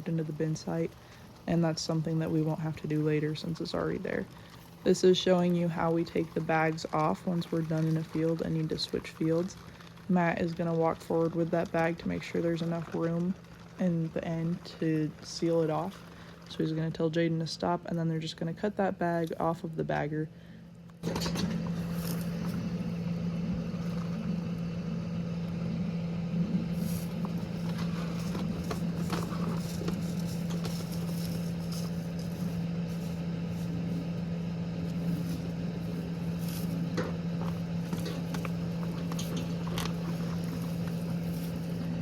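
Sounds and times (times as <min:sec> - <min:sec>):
engine running steadily: 0:19.2 - 0:42.0.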